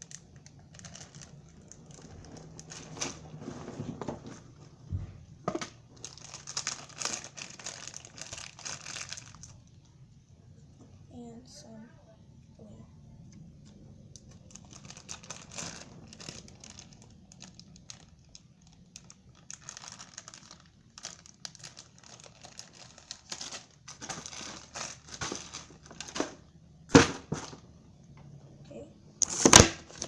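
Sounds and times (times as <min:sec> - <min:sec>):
slime squishing and crackling: 0:00.0 - 0:03.8, 0:05.8 - 0:09.6, 0:13.7 - 0:26.1.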